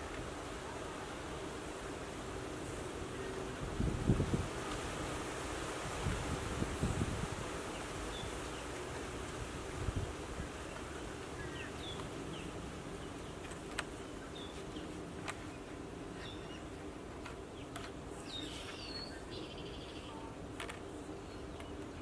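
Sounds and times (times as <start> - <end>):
wind hiss: 0.0 - 21.3
small birds chirping: 7.7 - 8.8, 10.4 - 20.3.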